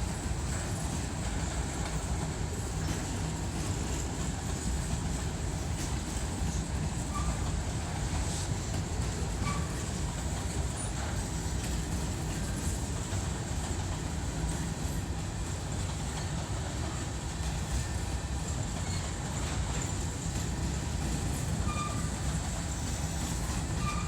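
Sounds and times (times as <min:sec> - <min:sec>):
train wheels rumbling on rails: 0:00.0 - 0:24.0
faint wheel squeals: 0:07.0 - 0:07.5, 0:09.2 - 0:10.0, 0:17.8 - 0:20.1, 0:21.3 - 0:24.0.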